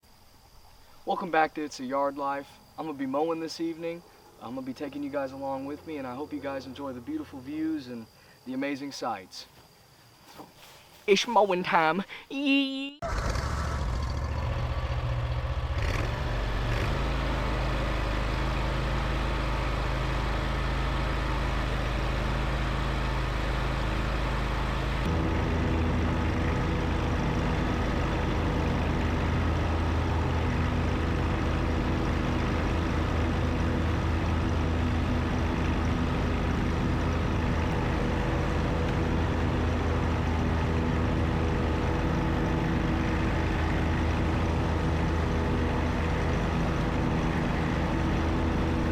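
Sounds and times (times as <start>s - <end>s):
riding lawn mower engine: 13.0s - 48.9s.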